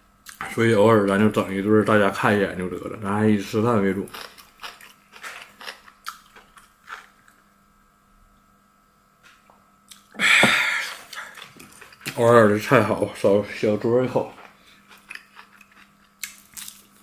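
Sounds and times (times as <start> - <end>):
person chewing food: 4.1 - 7.4, 10.9 - 12.2, 14.4 - 17.0.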